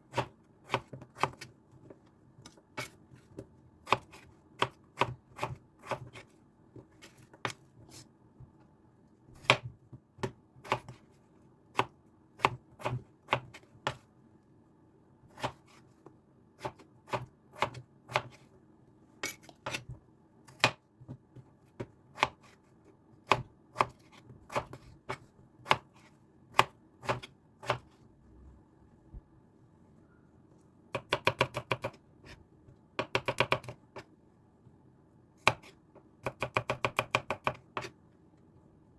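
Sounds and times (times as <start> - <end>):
knife chopping on cutting board: 3.8 - 6.3, 9.4 - 11.0, 15.4 - 15.8, 16.6 - 18.4, 23.2 - 27.9, 35.4 - 37.9.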